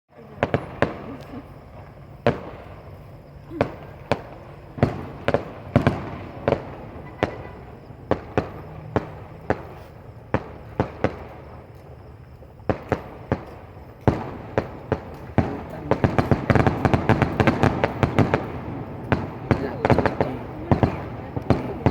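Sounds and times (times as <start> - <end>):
fireworks bangs: 0.2 - 21.9.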